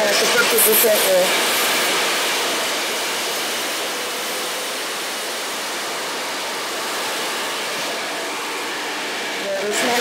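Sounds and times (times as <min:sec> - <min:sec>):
hair dryer rushing air: 0:00.0 - 0:10.0.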